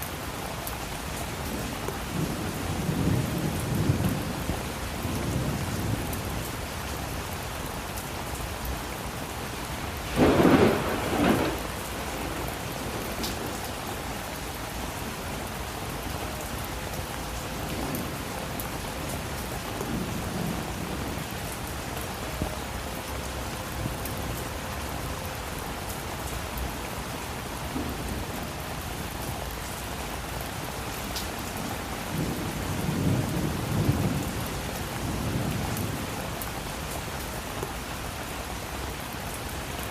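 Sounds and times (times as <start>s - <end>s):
steady rain: 0.0s - 39.9s
low thunder rumble: 1.9s - 6.6s, 10.0s - 13.8s, 31.6s - 36.1s
thunder crack: 10.1s - 13.2s.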